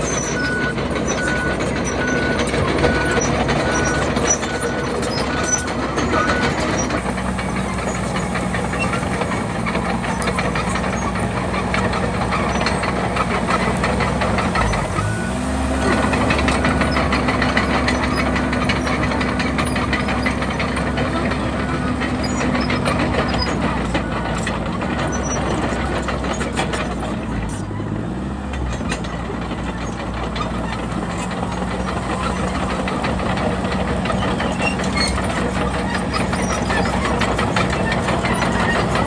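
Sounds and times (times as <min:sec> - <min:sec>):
bulldozer diesel engine under load: 0:00.0 - 0:39.0
metal knocks and clanks: 0:28.5 - 0:39.0.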